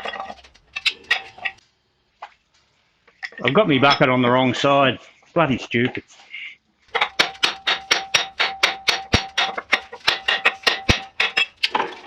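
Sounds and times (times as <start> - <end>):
hammer blows on anvil: 7.0 - 11.5.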